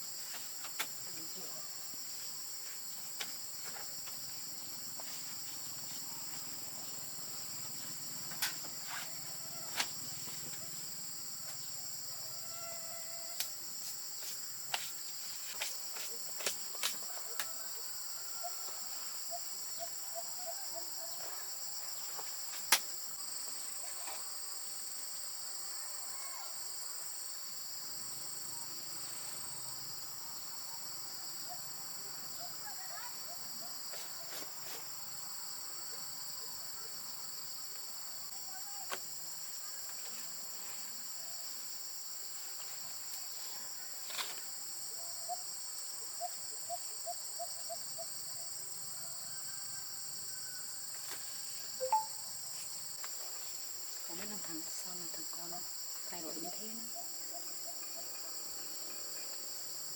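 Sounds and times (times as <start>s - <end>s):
high-pitched insect chorus: 0.0s - 59.9s.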